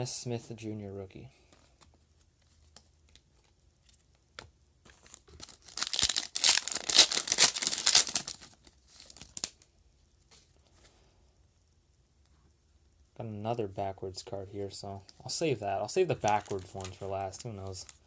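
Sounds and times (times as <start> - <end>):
wrapper tearing and crinkling: 5.0 - 9.6, 16.2 - 17.2.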